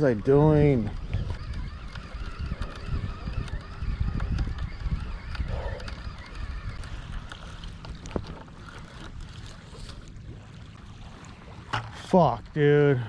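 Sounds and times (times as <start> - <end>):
wind buffeting microphone: 0.0 - 12.8
faint clicks: 0.7 - 10.0.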